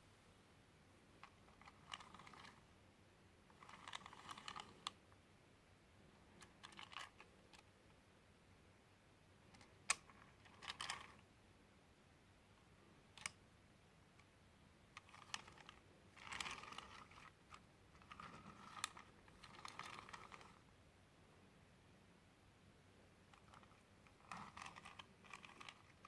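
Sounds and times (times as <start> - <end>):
plastic toy clicking and rattling: 1.2 - 2.6, 3.5 - 5.0, 6.4 - 7.6, 9.6 - 11.2, 15.0 - 20.6, 23.3 - 26.0.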